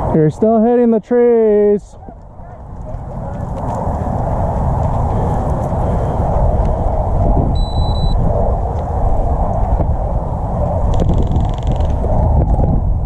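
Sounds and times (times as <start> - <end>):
low rumbling noise: 1.8 - 13.0
high beep: 7.6 - 8.2.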